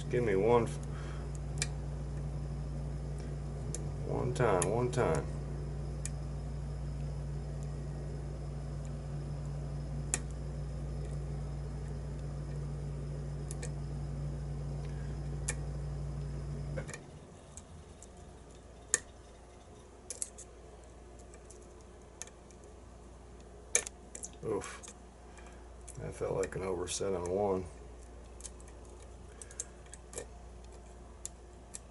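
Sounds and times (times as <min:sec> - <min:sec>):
steady low hum: 0:00.0 - 0:31.9.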